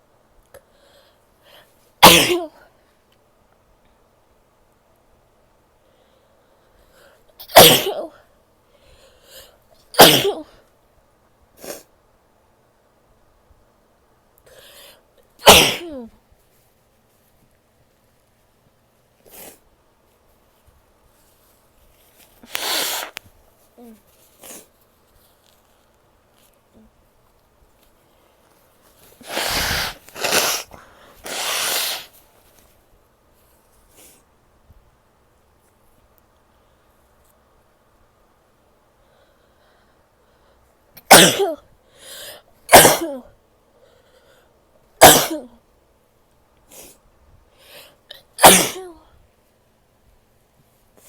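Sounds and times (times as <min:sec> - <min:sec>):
woman sneezing: 0:02.0 - 0:02.6, 0:07.4 - 0:08.2, 0:10.0 - 0:10.6, 0:15.4 - 0:16.1, 0:22.5 - 0:23.1, 0:29.2 - 0:32.1, 0:41.0 - 0:41.6, 0:42.7 - 0:43.3, 0:45.0 - 0:45.6, 0:48.4 - 0:49.1
woman forcing air through nose: 0:14.5 - 0:16.0, 0:19.3 - 0:19.6, 0:22.4 - 0:23.2, 0:29.2 - 0:32.2, 0:41.0 - 0:43.2, 0:47.6 - 0:49.0
short intake of breath: 0:22.5 - 0:23.2, 0:29.2 - 0:32.2.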